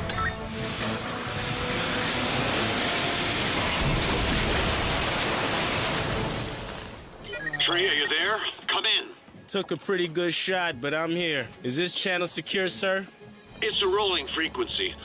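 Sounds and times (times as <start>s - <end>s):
jet aircraft engine rushing: 0.4s - 5.6s.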